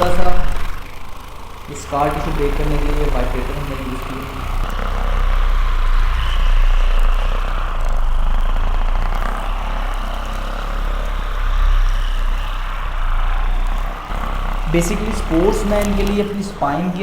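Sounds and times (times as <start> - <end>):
massager motor hum: 0.0 - 17.0.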